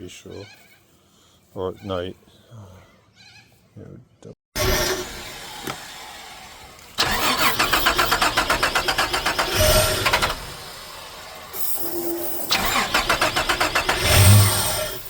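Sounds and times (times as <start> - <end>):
engine cranking on starter motor: 4.6 - 15.0.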